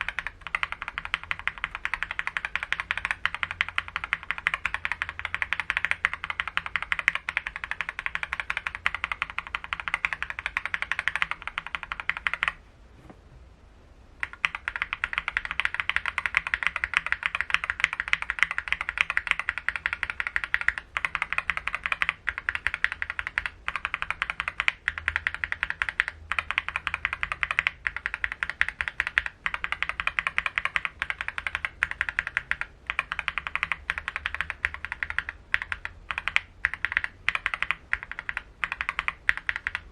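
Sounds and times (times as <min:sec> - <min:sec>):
fast typing on mechanical keyboard: 0:00.0 - 0:12.6, 0:14.2 - 0:39.9.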